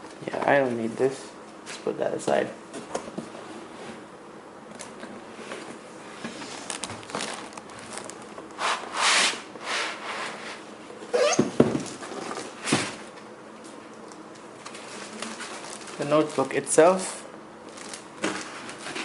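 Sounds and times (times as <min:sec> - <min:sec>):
cardboard packaging rustling: 0:06.4 - 0:08.4, 0:14.6 - 0:16.7, 0:17.7 - 0:19.0.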